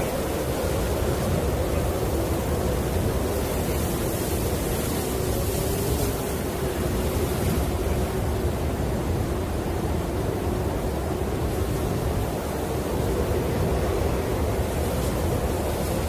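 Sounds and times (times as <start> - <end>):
snowstorm wind rushing: 0.0 - 16.0.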